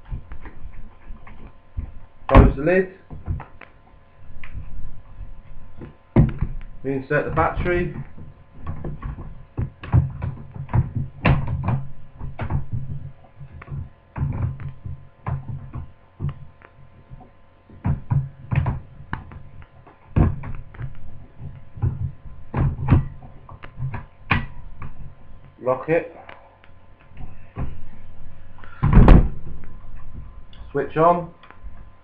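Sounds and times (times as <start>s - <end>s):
faint hum: 0.0s - 32.0s
plastic knocks and clicks: 5.8s - 6.7s, 7.4s - 25.1s.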